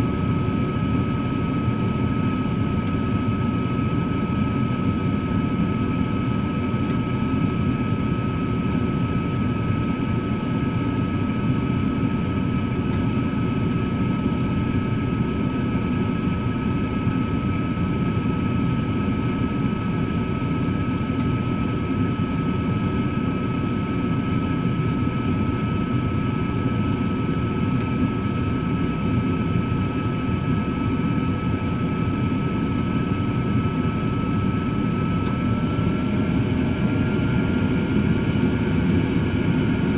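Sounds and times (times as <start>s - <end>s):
motor high whine: 31.1s - 39.9s.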